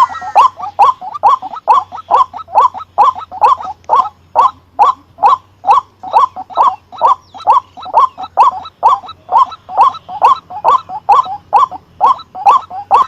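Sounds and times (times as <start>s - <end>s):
waterhen croaking calls: 0.0s - 13.0s.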